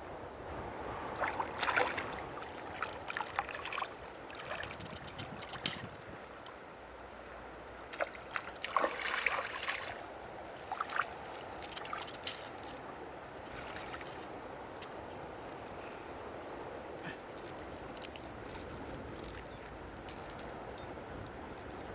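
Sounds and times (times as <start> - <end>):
water splashing: 1.2 - 5.8, 7.9 - 12.8
running water: 7.7 - 16.0.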